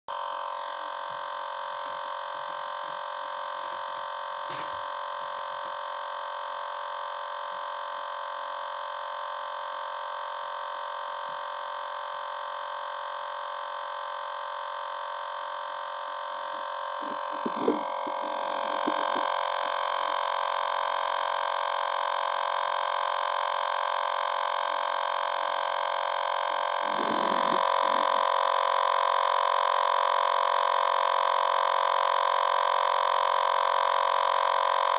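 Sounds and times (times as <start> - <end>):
electronic buzzing tone from toy: 0.1 - 34.9.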